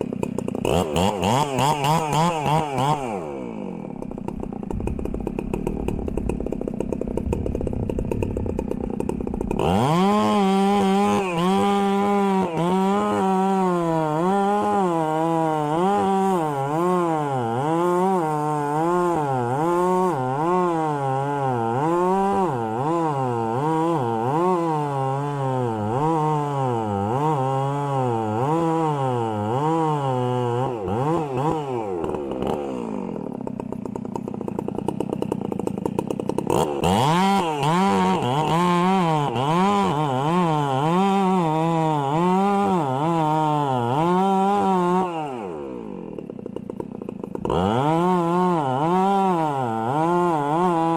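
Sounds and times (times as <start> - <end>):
chainsaw cutting wood: 0.0 - 50.9.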